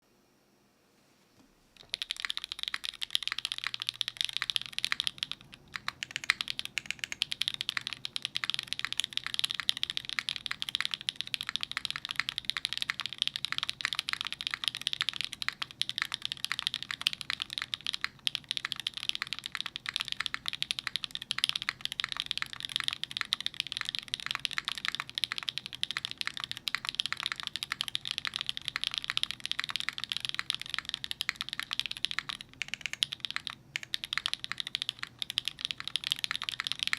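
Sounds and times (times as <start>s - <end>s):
fast mechanical keyboard typing: 1.8s - 36.9s.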